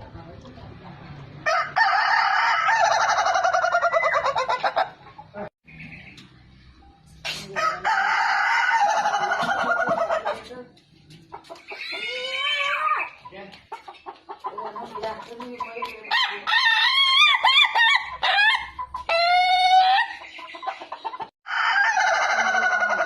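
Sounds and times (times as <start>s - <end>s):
rooster crowing: 1.4s - 4.6s, 7.6s - 10.0s, 21.5s - 23.0s
chicken clucking: 2.8s - 6.4s, 8.7s - 16.4s, 17.0s - 23.0s.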